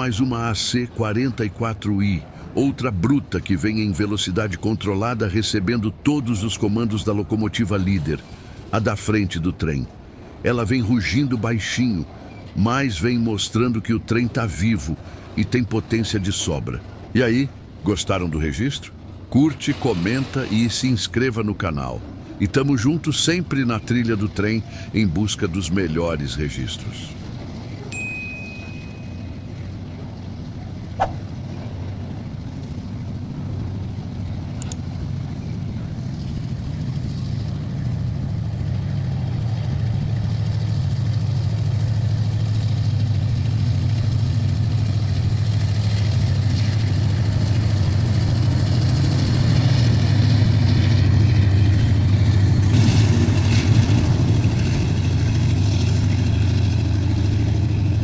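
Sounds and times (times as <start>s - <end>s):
locomotive engine drone: 0.0s - 58.0s
sharp click: 34.6s - 34.8s.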